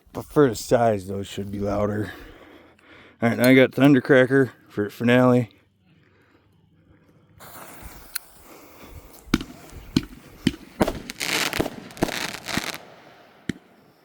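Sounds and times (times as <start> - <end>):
continuous hiss: 7.4 - 14.0
firecrackers crackling: 7.4 - 14.0
firecracker bangs: 9.3 - 14.0.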